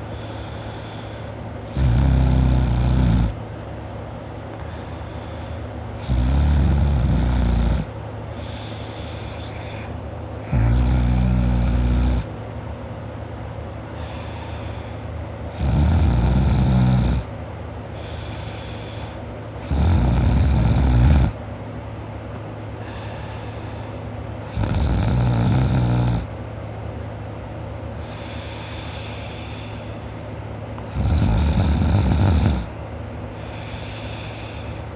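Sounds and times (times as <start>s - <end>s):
quiet breaths: 0.0s - 1.7s, 3.3s - 6.6s, 7.2s - 12.3s, 13.0s - 16.3s, 17.0s - 21.4s, 22.5s - 24.4s, 27.7s - 34.9s
man snoring: 0.2s - 3.4s, 6.0s - 12.3s, 15.5s - 17.3s, 18.0s - 21.4s, 24.5s - 26.3s, 30.9s - 32.7s.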